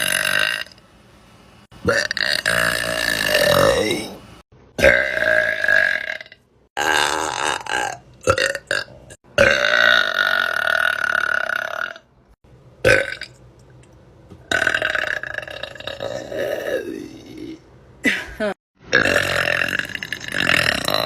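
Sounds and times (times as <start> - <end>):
person burping: 1.8 - 4.2, 4.8 - 12.1, 12.8 - 13.3, 14.5 - 17.6, 18.4 - 21.0.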